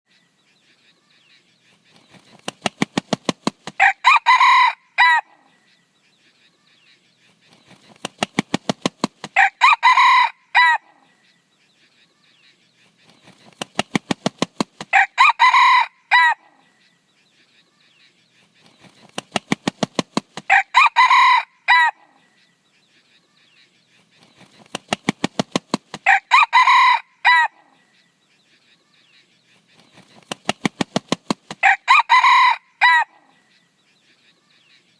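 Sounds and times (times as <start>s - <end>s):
rooster crowing: 3.8s - 5.3s, 9.4s - 10.9s, 14.9s - 16.5s, 20.5s - 22.0s, 26.0s - 27.6s, 31.6s - 33.2s
wing claps: 7.8s - 9.4s, 13.4s - 14.9s, 19.0s - 20.5s, 24.6s - 26.0s, 30.1s - 31.6s.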